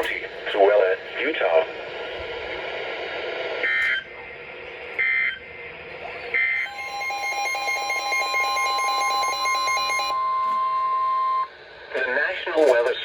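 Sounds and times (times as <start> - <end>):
steady alarm tone: 6.0 - 11.8.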